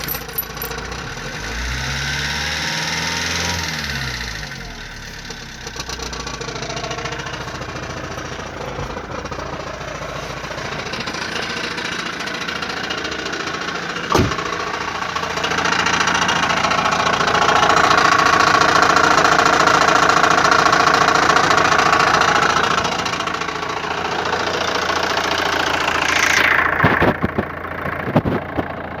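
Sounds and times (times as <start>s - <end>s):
diesel engine idling: 0.0s - 29.0s
high-pitched engine noise: 25.0s - 27.4s.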